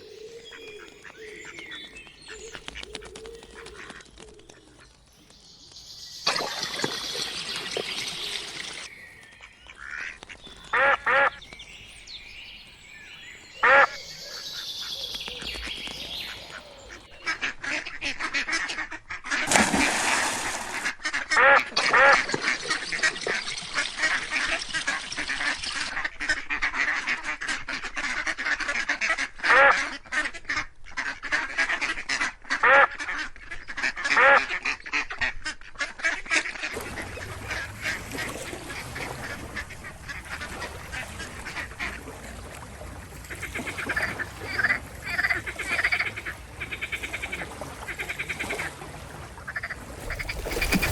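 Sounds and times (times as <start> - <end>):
ducks quacking: 9.4 - 11.4, 13.6 - 42.6, 43.2 - 48.8, 49.4 - 50.9.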